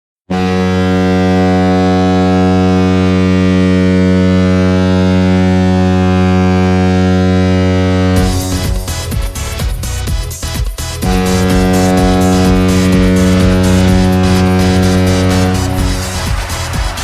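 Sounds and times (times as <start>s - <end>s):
goal horn low note: 0.3s - 17.0s
electronic music with driving beat: 7.9s - 17.0s.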